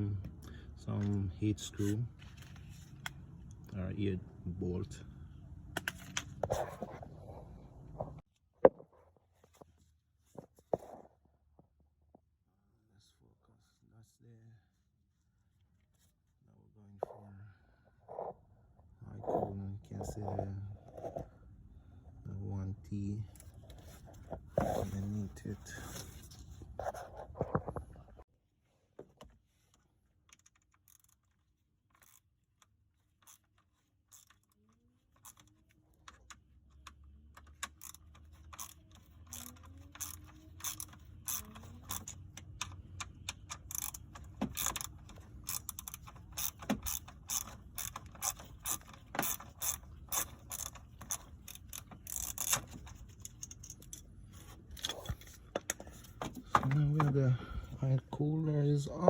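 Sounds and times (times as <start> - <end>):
hand ratchet clicking: 36.8 - 54.0.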